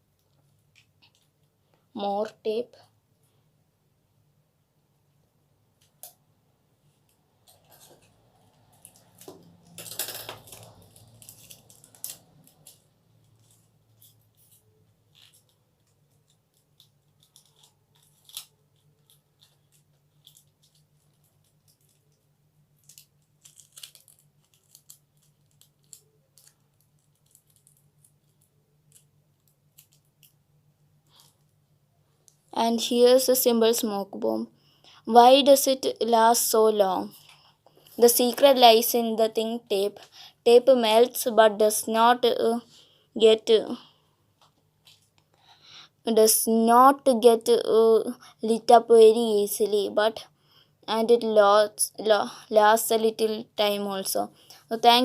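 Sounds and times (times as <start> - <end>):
tape clicks and crinkles: 0.2 - 1.6, 7.0 - 30.4, 44.4 - 45.4
adhesive tape pulled and torn: 8.8 - 20.8, 22.8 - 27.8.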